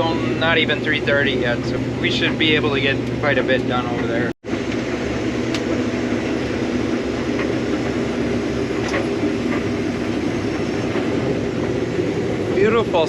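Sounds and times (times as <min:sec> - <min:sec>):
combine harvester droning: 0:00.0 - 0:13.0.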